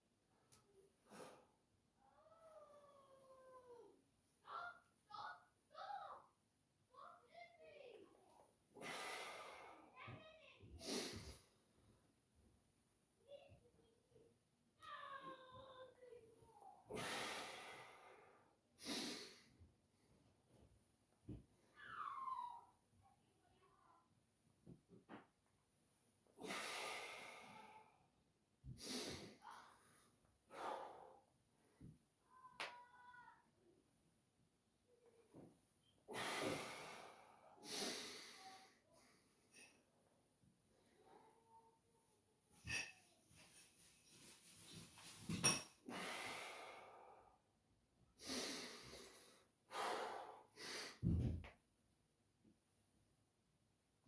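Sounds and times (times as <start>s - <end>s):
man breathing heavily: 48.2s - 51.0s.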